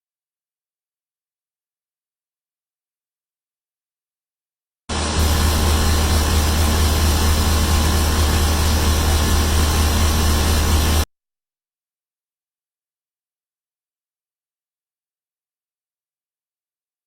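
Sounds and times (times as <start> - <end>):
machine humming and rushing: 4.9 - 11.0.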